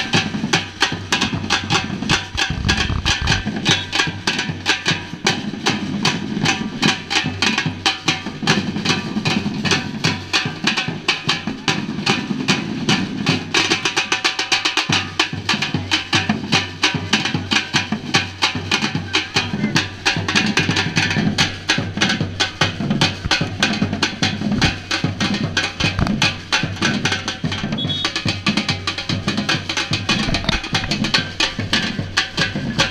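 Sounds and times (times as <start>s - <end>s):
sharp drum strikes: 0.0s - 5.4s, 16.4s - 32.9s
samba-reggae drum ensemble: 0.0s - 32.9s
deep bass drums: 0.6s - 4.2s, 19.5s - 28.0s, 30.0s - 31.8s.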